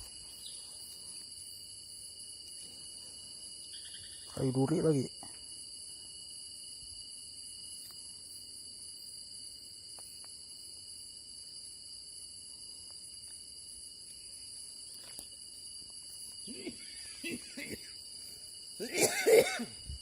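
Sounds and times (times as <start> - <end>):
insects trilling: 0.0 - 20.0
faint ticks: 9.9 - 10.4.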